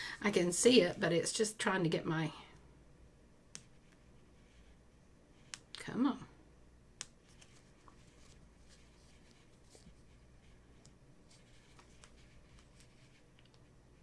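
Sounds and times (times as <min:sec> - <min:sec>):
paper rustling and ticks: 0:10.8 - 0:13.6.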